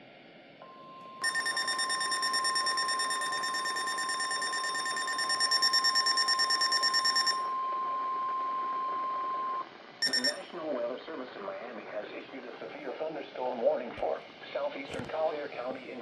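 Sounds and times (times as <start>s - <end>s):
steady warning alarm tone: 1.0s - 7.8s, 10.0s - 10.5s
rapid electronic alarm beeps: 1.2s - 7.6s, 10.0s - 10.5s.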